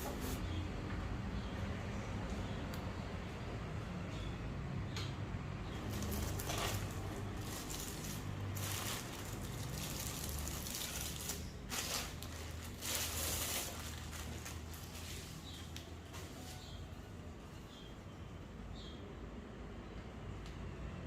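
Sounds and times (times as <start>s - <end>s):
packaging rustling and crinkling: 5.8s - 15.8s.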